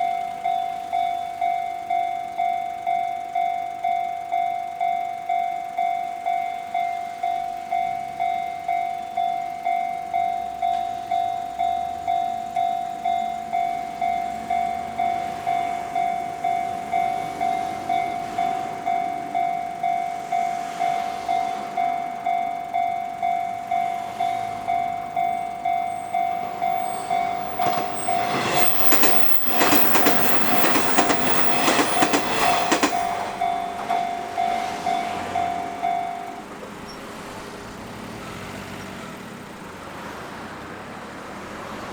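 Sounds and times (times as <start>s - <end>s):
level crossing bell ringing: 0.0s - 36.6s
train wheels clattering: 24.9s - 36.3s.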